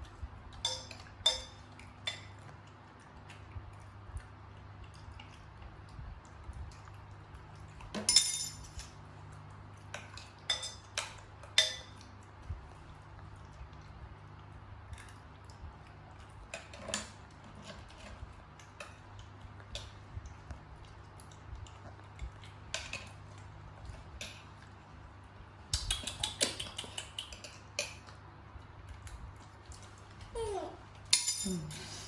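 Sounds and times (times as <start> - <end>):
dishes and cutlery clinking: 0.6 - 2.4, 7.9 - 8.9, 10.0 - 12.0, 31.1 - 32.0.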